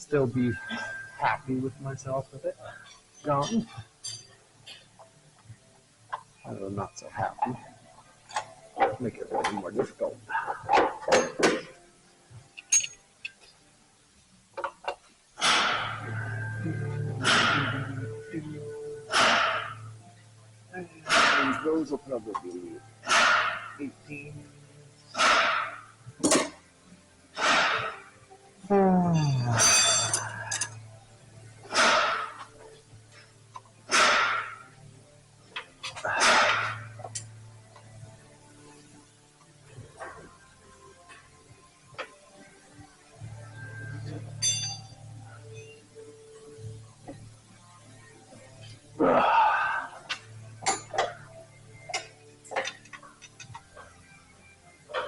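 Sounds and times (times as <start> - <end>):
hand tools clinking on metal: 2.8 - 4.9, 12.6 - 13.4, 29.2 - 30.9, 44.3 - 45.8, 50.1 - 51.2, 51.9 - 53.9
steady low hum: 15.3 - 28.1.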